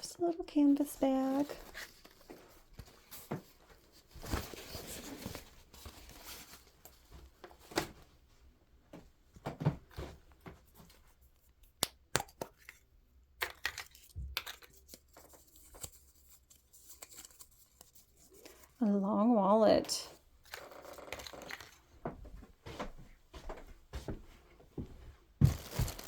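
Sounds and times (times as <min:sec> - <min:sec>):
wrapping rustling and clicking: 0:01.3 - 0:08.0, 0:20.4 - 0:22.0, 0:25.4 - 0:26.0
wrapping tearing: 0:25.4 - 0:26.0.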